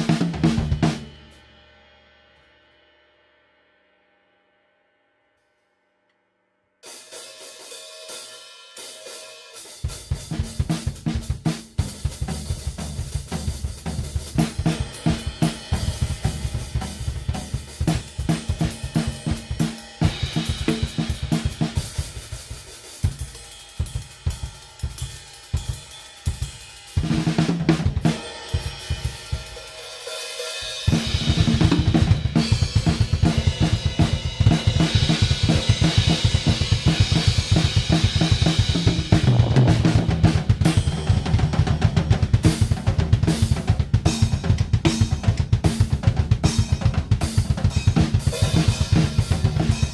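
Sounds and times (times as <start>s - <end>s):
drum kit playing: 0.0s - 1.7s, 6.8s - 49.9s
crash cymbals: 28.2s - 31.2s.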